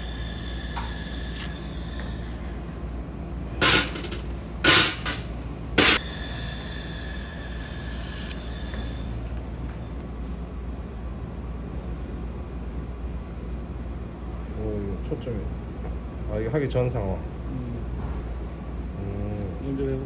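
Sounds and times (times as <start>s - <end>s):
loud hissing bursts: 0.0s - 2.4s
laser welder humming with whine: 0.0s - 11.1s.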